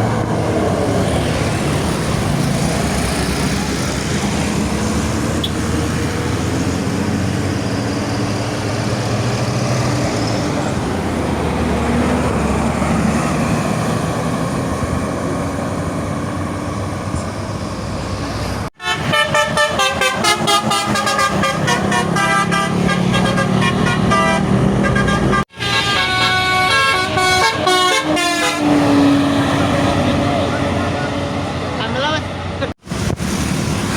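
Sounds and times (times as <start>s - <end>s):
bus engine: 0.0s - 33.9s
road traffic: 0.0s - 33.9s
musical horn playing a tune: 18.8s - 29.5s.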